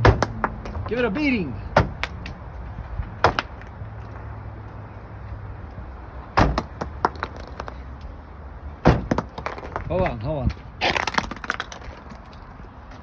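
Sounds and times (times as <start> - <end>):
rock bouncing on ground: 1.8 - 2.4, 6.4 - 7.8, 8.9 - 10.2, 10.8 - 12.2.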